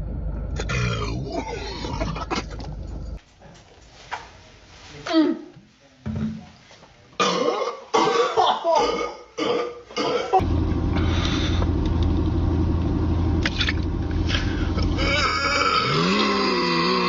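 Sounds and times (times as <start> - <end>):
low drone: 0.0 - 3.2, 10.4 - 17.0
person burping: 0.6 - 2.6, 7.2 - 10.4, 14.8 - 17.0.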